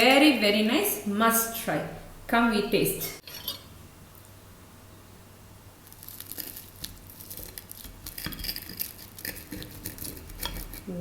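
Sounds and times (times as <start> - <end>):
fried pancake crunching: 5.8 - 10.8.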